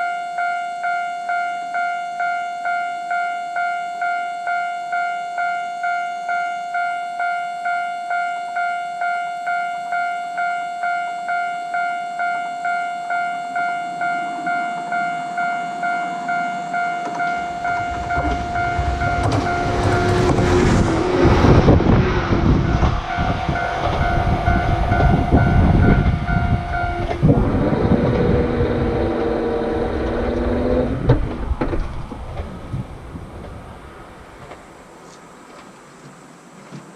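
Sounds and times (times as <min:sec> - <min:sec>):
level crossing bell ringing: 0:00.0 - 0:20.2
train rumbling: 0:13.6 - 0:36.9
wheels clattering over rail joints: 0:17.0 - 0:36.9.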